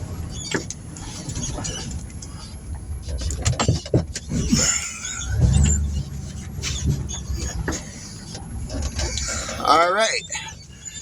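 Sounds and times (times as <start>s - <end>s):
squeaks and clicking rattles: 0.0s - 11.0s
truck engine running: 0.0s - 11.0s.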